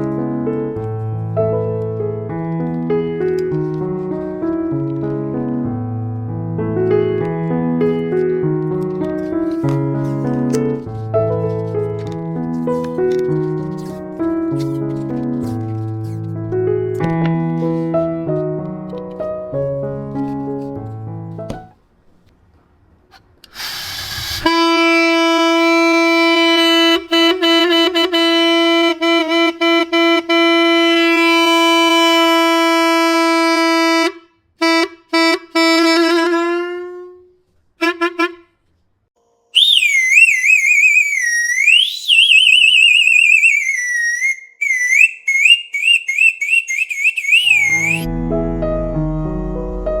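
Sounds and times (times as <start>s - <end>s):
hiss of air: 23.5s - 24.6s
air horn blasting: 24.2s - 37.2s, 37.8s - 38.5s, 43.6s - 50.0s
high wavering whistle tone: 39.5s - 49.9s.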